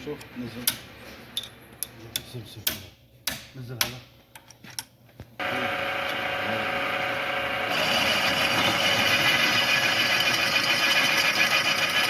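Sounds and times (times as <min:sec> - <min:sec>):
lathe motor humming: 0:05.4 - 0:12.0.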